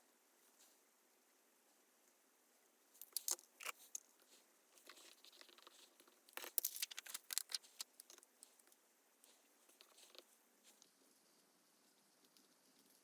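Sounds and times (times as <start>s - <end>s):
paper rustling: 3.1s - 8.7s, 9.3s - 10.9s.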